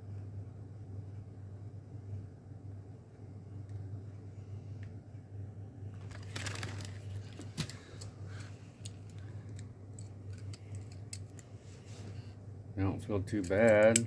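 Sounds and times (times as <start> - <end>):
steady low hum: 0.0 - 14.0
packaging crinkling and tearing: 6.0 - 7.7
metal pliers clicking: 8.0 - 11.4, 13.4 - 14.0.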